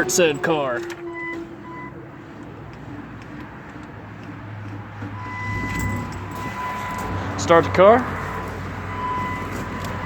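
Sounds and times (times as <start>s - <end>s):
low car engine hum: 0.0s - 10.0s
electronic chime tone: 5.2s - 7.1s.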